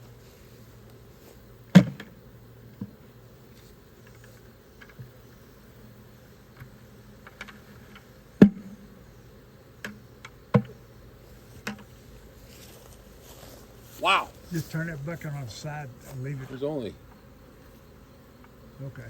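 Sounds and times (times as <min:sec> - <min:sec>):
faint buzzing of bees: 0:00.0 - 0:19.0
knocks on a bucket: 0:01.8 - 0:02.1, 0:10.5 - 0:10.7.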